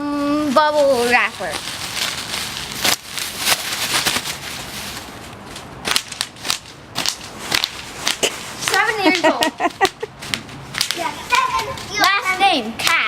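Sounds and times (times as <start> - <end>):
bubble wrap popping: 0.8 - 4.5, 5.8 - 11.0.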